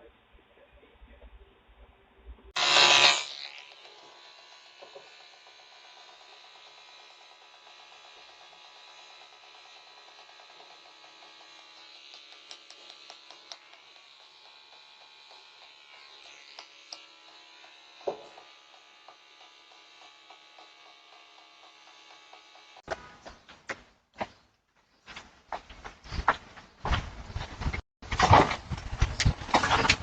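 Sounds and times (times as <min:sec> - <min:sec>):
faint electrical buzz: 0:02.6 - 0:22.8.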